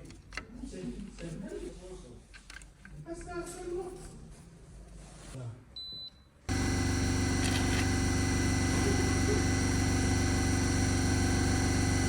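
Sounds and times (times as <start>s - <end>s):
diesel engine idling: 6.5s - 12.0s.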